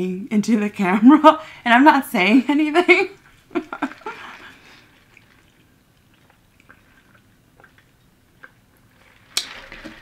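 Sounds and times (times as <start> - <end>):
faint chewing: 3.2 - 9.5.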